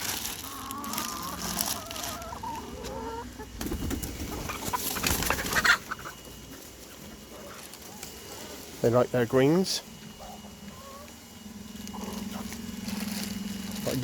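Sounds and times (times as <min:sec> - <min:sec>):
hens clucking: 0:00.0 - 0:14.0
rustling noise: 0:12.0 - 0:14.0.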